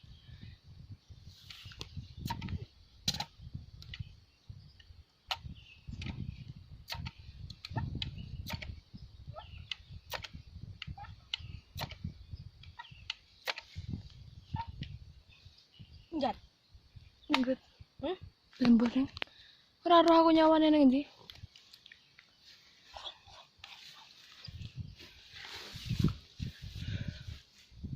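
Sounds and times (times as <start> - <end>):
sharp clicks: 1.7 - 4.1, 4.8 - 8.8, 9.6 - 13.8, 17.3 - 17.6.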